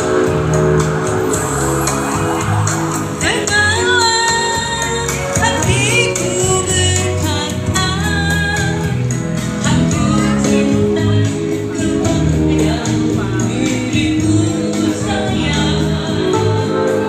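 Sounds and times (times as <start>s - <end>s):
backing music with bass line: 0.0s - 17.0s
person singing: 1.2s - 17.0s.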